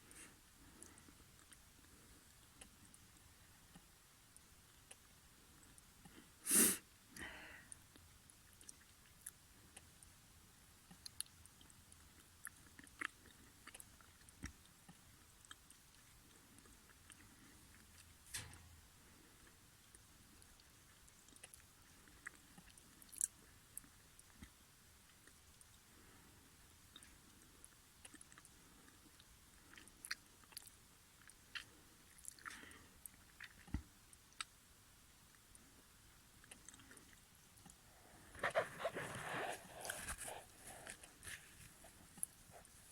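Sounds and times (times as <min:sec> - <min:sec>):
small rustles: 0:36.8 - 0:42.9.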